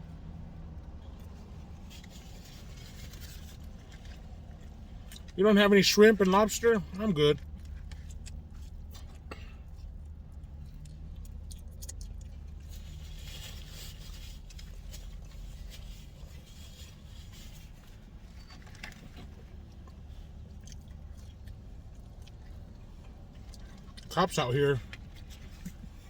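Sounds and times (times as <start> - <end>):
low hum inside a car: 0.0 - 26.0
chewing: 7.4 - 24.1.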